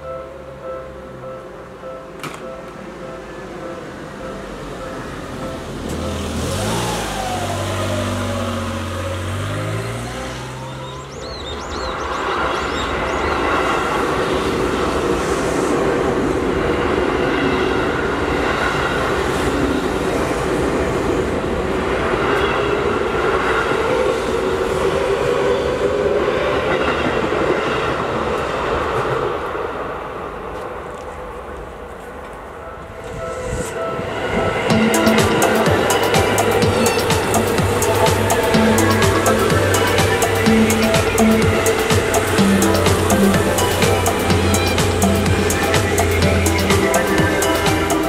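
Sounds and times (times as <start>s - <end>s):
train cars rumbling past: 0.0s - 48.0s
high wheel squeal: 3.2s - 15.6s, 32.9s - 48.0s
train motors whining: 5.2s - 11.3s, 34.7s - 48.0s.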